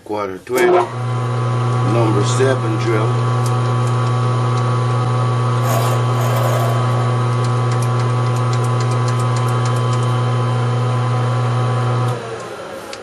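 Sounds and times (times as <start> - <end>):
metal lathe humming: 5.6 - 8.6.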